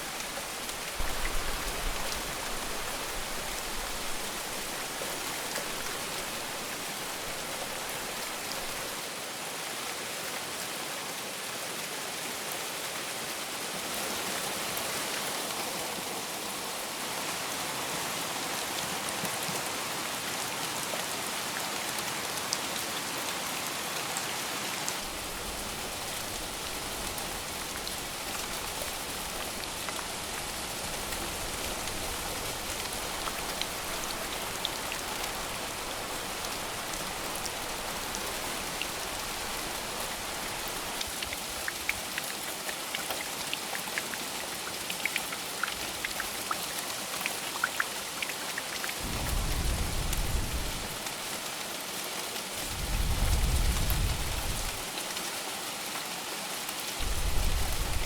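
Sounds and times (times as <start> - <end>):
heavy rain falling: 0.0 - 9.5, 23.4 - 42.7, 48.6 - 58.0.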